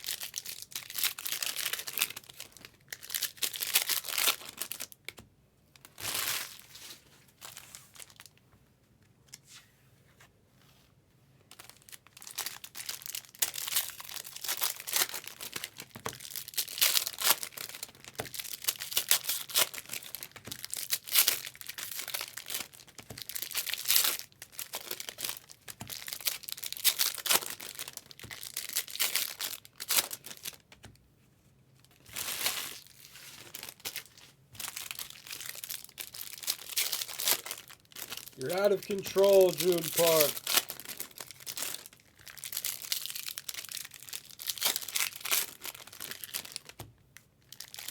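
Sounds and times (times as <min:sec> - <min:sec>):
wrappers tearing and crinkling: 0:00.0 - 0:05.0, 0:05.8 - 0:08.4, 0:11.5 - 0:30.6, 0:31.9 - 0:46.8, 0:47.4 - 0:47.9.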